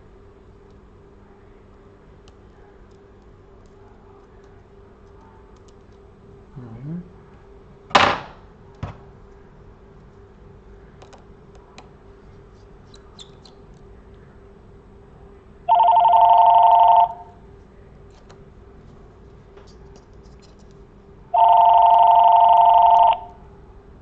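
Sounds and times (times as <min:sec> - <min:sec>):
faint steady hum: 0:00.0 - 0:24.0
electronic two-tone ring: 0:15.7 - 0:17.3, 0:21.4 - 0:23.3.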